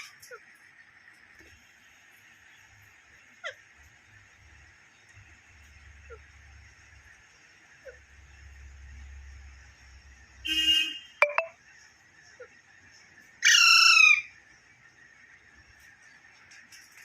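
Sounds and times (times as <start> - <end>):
parrot squawking and calling: 13.4 - 14.3.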